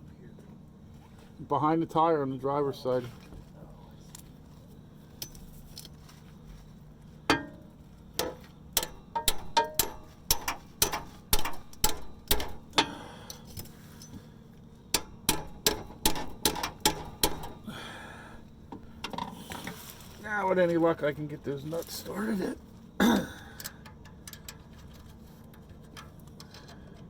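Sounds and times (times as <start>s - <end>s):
hammer tapping on metal: 7.3s - 13.0s, 14.9s - 17.6s.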